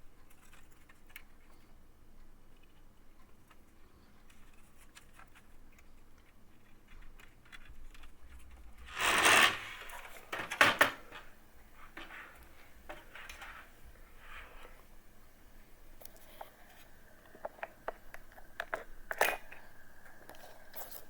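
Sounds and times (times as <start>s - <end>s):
loud scraping rub: 8.8s - 10.2s.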